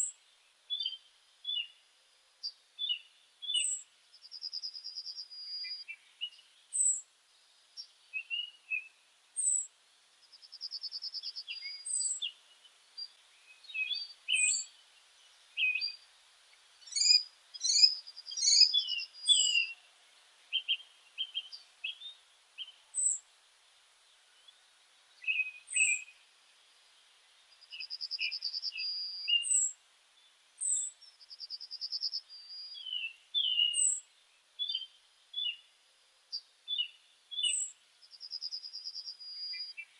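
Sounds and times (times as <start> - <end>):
songbirds chirping and singing: 0.0 - 1.8, 2.4 - 35.7, 36.3 - 39.9.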